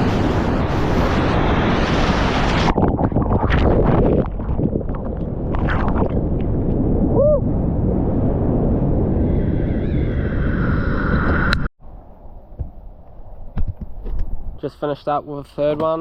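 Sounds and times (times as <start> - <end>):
wind buffeting microphone: 0.0 - 11.7.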